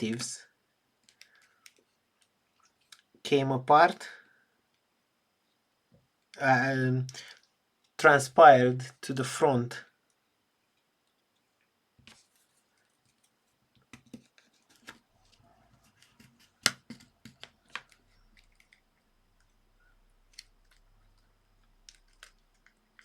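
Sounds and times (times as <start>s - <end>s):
plastic phone parts clicking: 16.0s - 18.9s, 20.2s - 23.0s.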